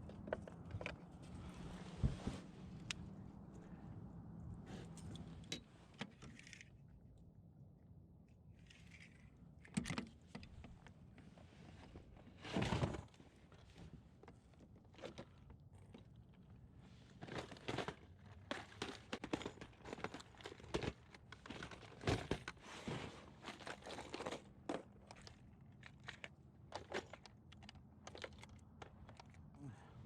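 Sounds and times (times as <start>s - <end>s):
fishing gear clicks and rustles: 4.5s - 6.8s, 8.6s - 11.2s, 11.8s - 29.6s.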